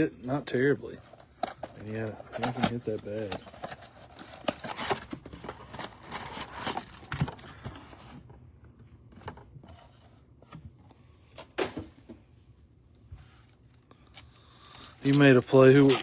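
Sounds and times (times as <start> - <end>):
cards and foil wrappers rustling: 0.2 - 8.2, 13.4 - 16.0.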